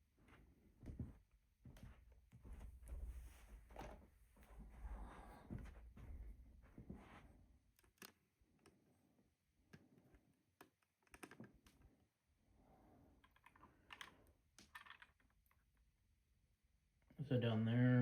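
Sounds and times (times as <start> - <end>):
plastic toy clicks and rustling: 13.2 - 15.6.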